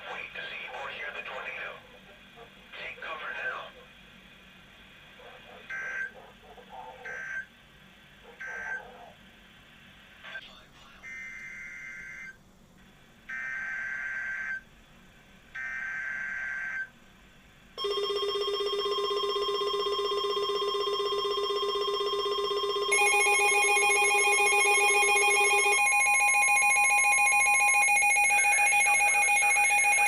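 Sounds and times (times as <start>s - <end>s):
multi-tone attention signal: 17.8s - 30.0s
digital data tone bursts: 21.5s - 30.0s.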